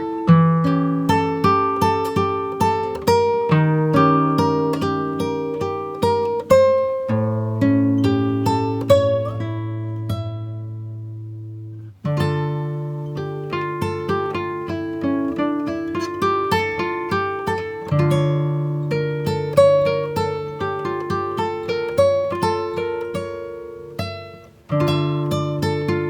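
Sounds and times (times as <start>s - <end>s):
plucked acoustic guitar music: 0.0s - 26.0s.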